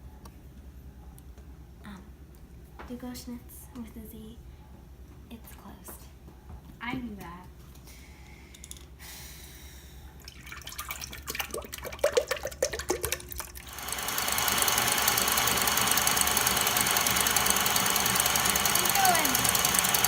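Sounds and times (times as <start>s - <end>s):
electric hand mixer running: 13.6s - 20.0s.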